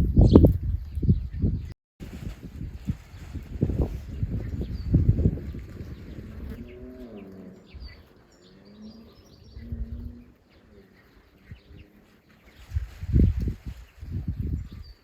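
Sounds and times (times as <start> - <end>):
small birds chirping: 0.0 - 1.7, 2.8 - 15.0
chickens foraging soft noises: 0.1 - 15.0
hens wavering low calls: 5.5 - 12.6.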